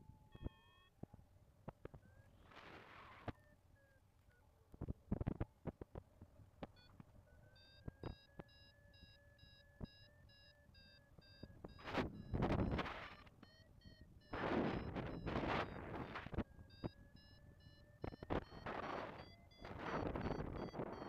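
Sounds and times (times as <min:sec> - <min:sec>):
variometer beeping: 0:00.0 - 0:01.0, 0:06.6 - 0:21.0.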